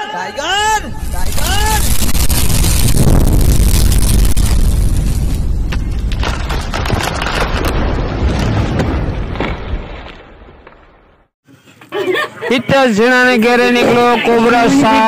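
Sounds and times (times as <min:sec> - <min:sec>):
booming rumble with crackle: 0:00.5 - 0:11.3.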